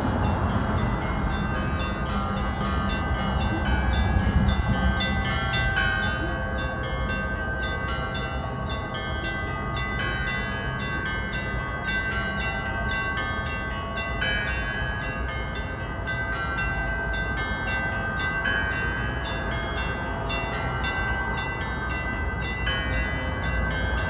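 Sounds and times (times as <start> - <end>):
deep bell ringing: 0.0 - 16.4
small church bells pealing: 0.0 - 24.0.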